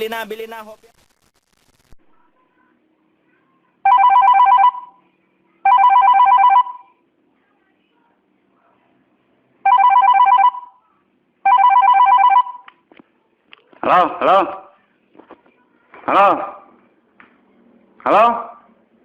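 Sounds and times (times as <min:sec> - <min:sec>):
telephone ringing with warbling trill: 0:03.8 - 0:05.0, 0:05.6 - 0:07.0, 0:09.7 - 0:10.8, 0:11.4 - 0:12.7.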